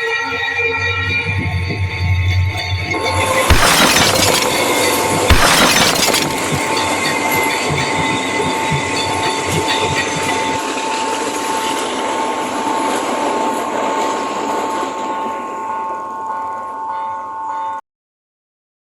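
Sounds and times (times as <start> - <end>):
train wheels rushing: 6.2 - 15.5.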